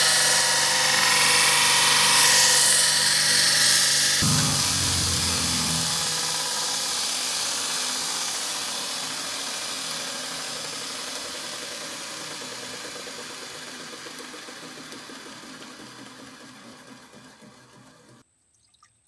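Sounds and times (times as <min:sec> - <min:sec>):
power tool hiss: 0:00.0 - 0:13.7
power tool motor hum: 0:00.0 - 0:18.2.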